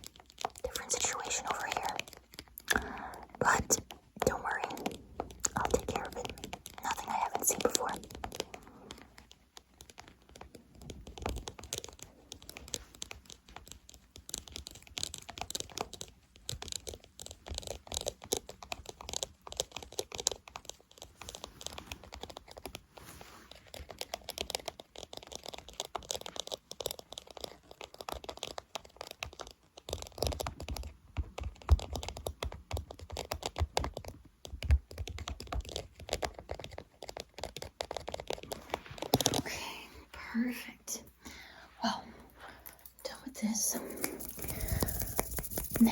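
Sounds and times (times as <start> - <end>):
ear cleaning scratching: 43.4 - 45.9.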